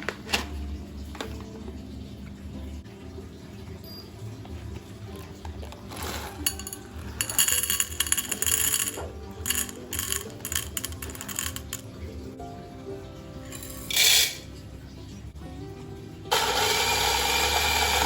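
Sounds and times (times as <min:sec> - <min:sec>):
background music: 0:00.0 - 0:18.0
clinks and rattles: 0:06.4 - 0:12.1.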